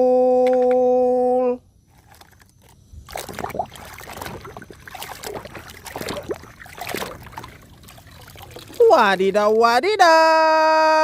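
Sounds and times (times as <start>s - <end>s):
water splashing and sloshing: 1.9s - 9.7s.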